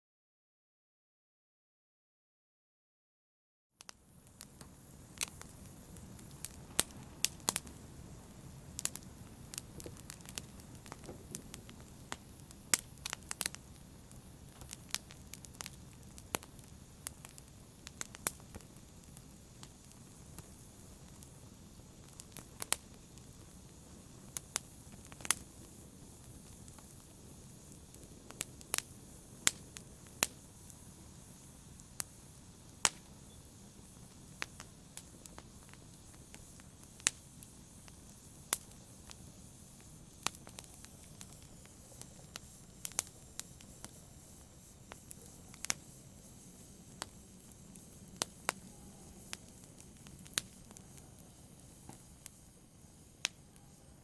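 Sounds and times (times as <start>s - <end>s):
fire crackling and popping: 3.8s - 54.0s
rumble of fire flames: 3.9s - 54.0s.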